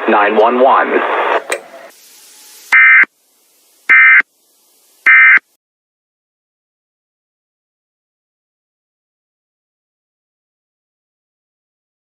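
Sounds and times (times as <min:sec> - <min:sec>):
buzzy digital data bursts: 0:01.4 - 0:05.4.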